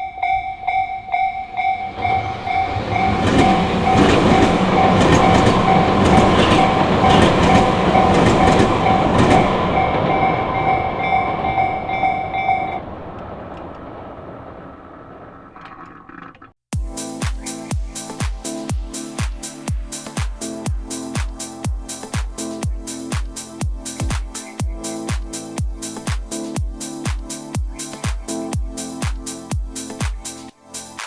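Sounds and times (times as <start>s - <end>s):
level-crossing bell dinging: 0.0s - 12.9s
train wheels clattering over rail joints: 1.6s - 10.4s.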